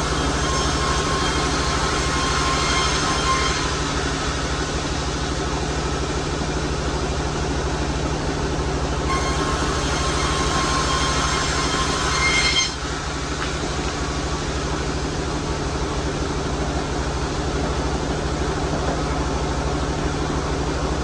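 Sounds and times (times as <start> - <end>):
saw whining through log: 0.0 - 6.2, 9.1 - 15.6
sawmill engine running: 0.0 - 21.0.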